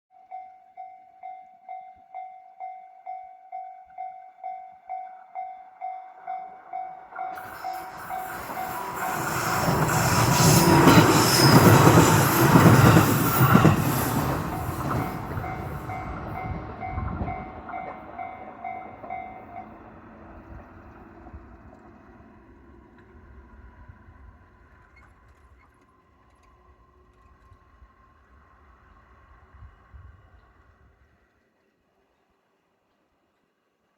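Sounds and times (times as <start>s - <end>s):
electric train passing: 0.3s - 32.7s
train wheels clacking on rail joints: 7.2s - 19.7s.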